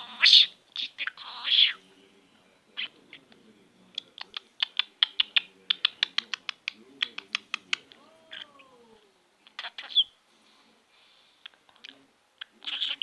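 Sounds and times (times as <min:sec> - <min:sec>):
budgerigar beak clicks: 0:04.0 - 0:07.9.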